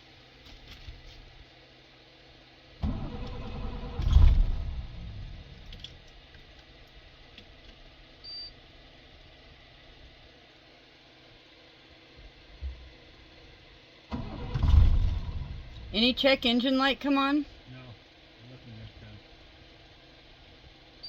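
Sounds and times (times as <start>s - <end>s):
diesel engine starter cranking: 2.8s - 5.8s, 14.1s - 16.3s.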